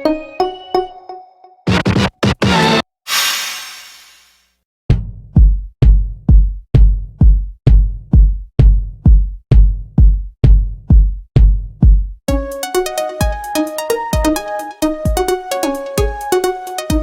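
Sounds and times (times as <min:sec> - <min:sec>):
drum machine kick drum: 0:04.9 - 0:12.6, 0:15.1 - 0:15.4.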